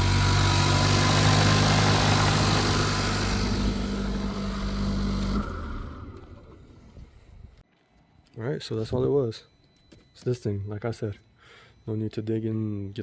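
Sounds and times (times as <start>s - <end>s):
car engine running: 0.0s - 7.0s.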